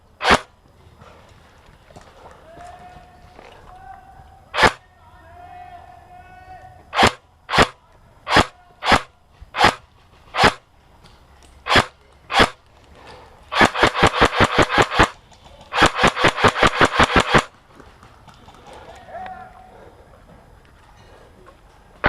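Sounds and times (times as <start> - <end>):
airsoft gun shots: 0.2 - 0.5, 4.5 - 4.8, 6.9 - 10.6, 11.6 - 12.6, 13.5 - 17.5.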